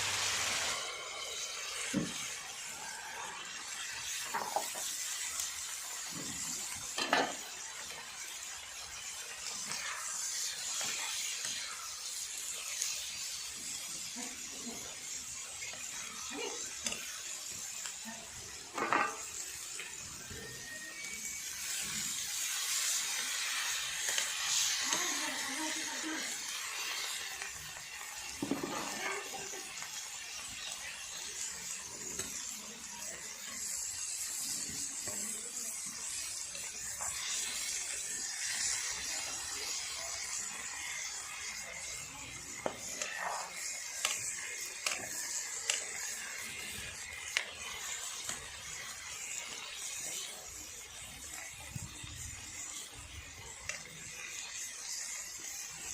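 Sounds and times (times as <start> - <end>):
curry sizzling in a pan: 0.0 - 55.9.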